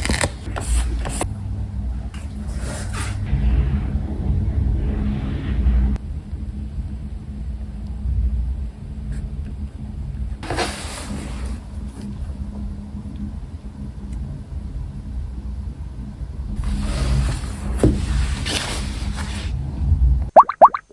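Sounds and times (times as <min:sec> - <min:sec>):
stickers and tape handled: 0:00.0 - 0:01.3
low rumble: 0:01.2 - 0:10.4.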